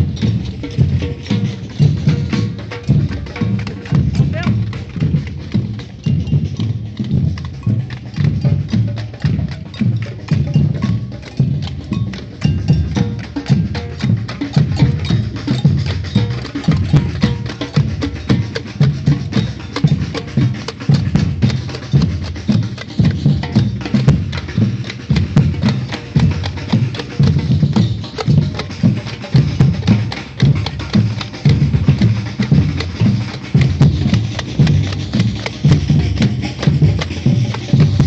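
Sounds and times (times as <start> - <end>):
deep bass drums pulsing: 0.0 - 10.8
rapid high drum hits: 0.0 - 38.0.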